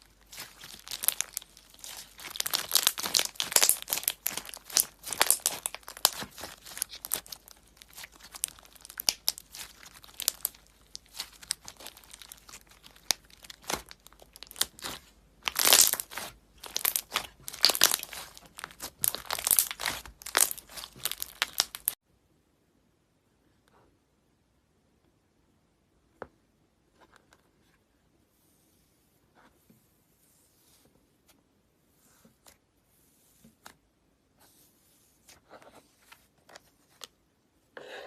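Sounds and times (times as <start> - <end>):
slime crackling and popping: 0.0 - 22.0.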